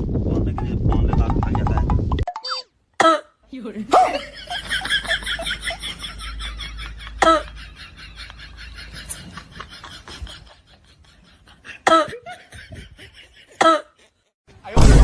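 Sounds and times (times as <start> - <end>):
high-pitched giggling laughter: 4.0 - 14.3
loud cough: 11.8 - 12.2, 13.6 - 14.0.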